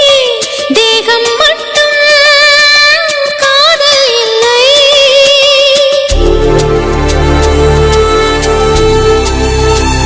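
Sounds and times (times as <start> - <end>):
soft musical accompaniment: 0.0 - 10.0
instrumental film song melody: 6.1 - 10.0.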